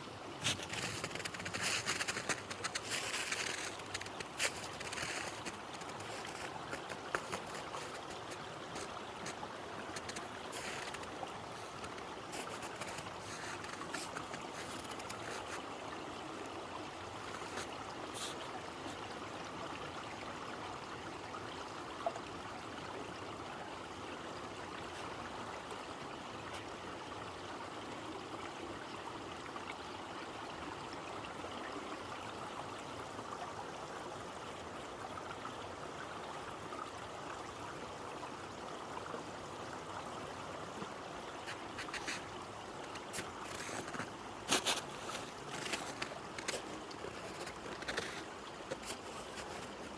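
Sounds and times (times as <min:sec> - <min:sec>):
stream trickling: 0:00.0 - 0:49.9.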